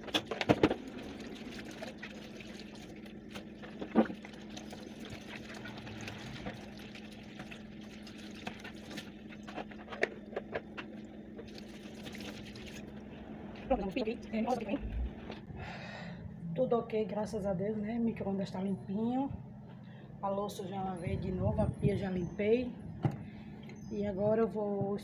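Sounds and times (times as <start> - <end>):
tap water running: 0.0 - 13.1.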